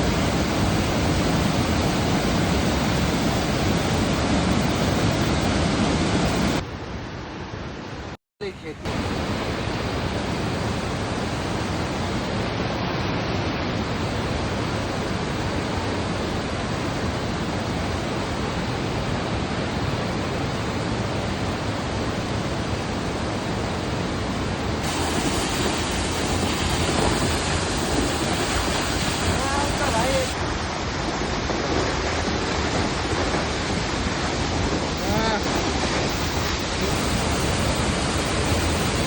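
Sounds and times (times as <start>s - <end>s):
waterfall rushing: 8.4s - 39.0s.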